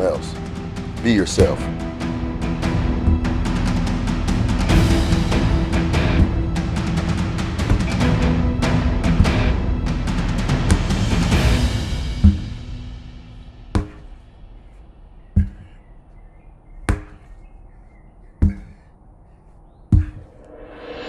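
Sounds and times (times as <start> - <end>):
music: 0.0 - 14.4, 20.5 - 21.0
sledgehammer thudding on tire: 7.5 - 8.3, 10.6 - 12.6, 13.7 - 14.3, 15.3 - 15.8, 16.8 - 17.4, 18.4 - 18.9, 19.9 - 20.4.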